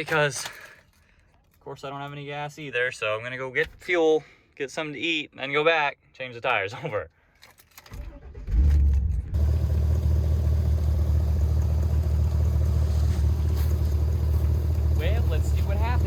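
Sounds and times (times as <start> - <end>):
engine starting and running: 7.8 - 16.0.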